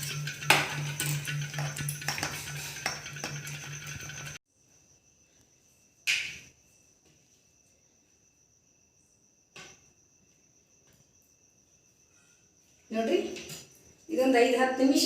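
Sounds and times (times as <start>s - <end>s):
kitchen utensils clinking: 0.0s - 4.4s.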